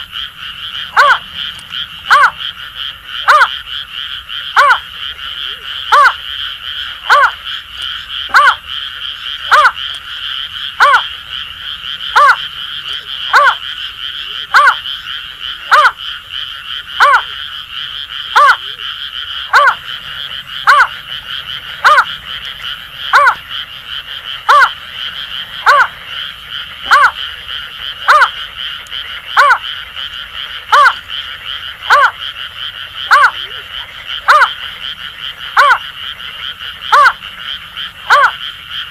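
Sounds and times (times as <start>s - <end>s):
frogs calling: 0.0s - 38.9s
bird hooting: 0.8s - 2.4s, 4.6s - 6.2s, 7.1s - 7.4s, 8.3s - 8.6s, 10.8s - 11.1s, 12.1s - 13.6s, 14.2s - 14.8s, 15.6s - 16.0s, 17.0s - 17.4s, 18.4s - 18.8s, 19.5s - 19.9s, 20.6s - 21.0s, 21.8s - 22.1s, 23.1s - 23.4s, 24.5s - 24.8s, 25.6s - 26.0s, 26.8s - 27.2s, 31.9s - 32.2s, 33.1s - 34.6s, 35.6s - 35.8s, 38.1s - 38.4s.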